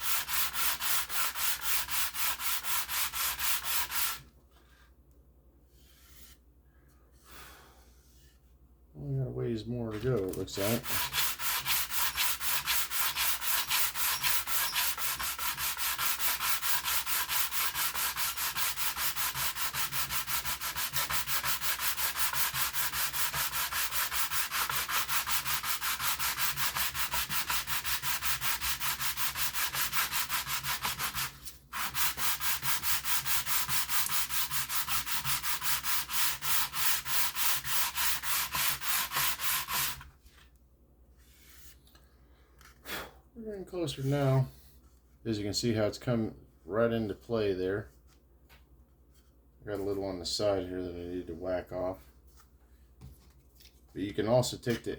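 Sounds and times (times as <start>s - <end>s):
hand sanding plastic sheet: 0.0s - 4.3s, 9.8s - 40.4s.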